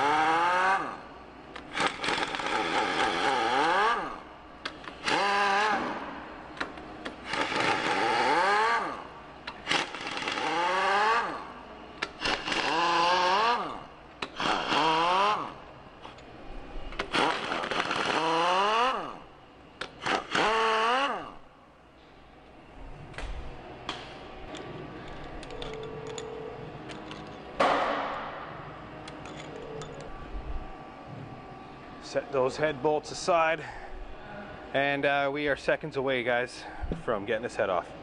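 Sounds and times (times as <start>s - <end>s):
impact wrench whining: 0.0s - 16.3s, 16.9s - 21.4s.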